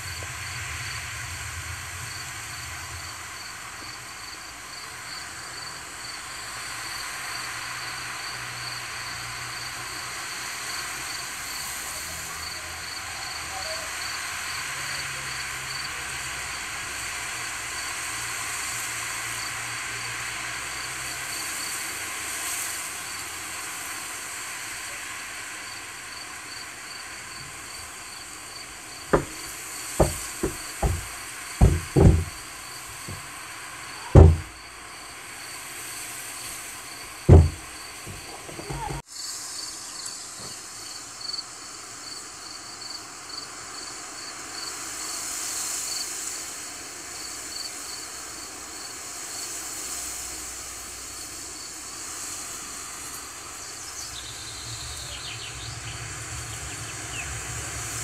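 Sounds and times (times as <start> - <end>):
wind through grass: 26.2 - 33.3, 44.4 - 58.0
sharp knocks: 29.1 - 33.3, 34.0 - 34.6, 37.1 - 39.0.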